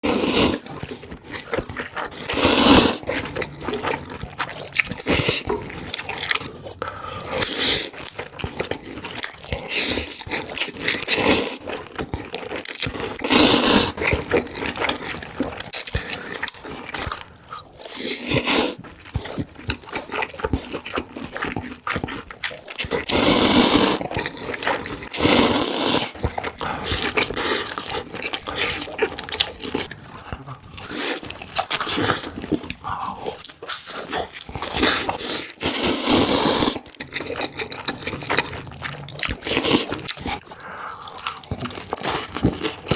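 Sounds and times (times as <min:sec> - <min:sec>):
chewing and biting food: 0:00.0 - 0:42.9.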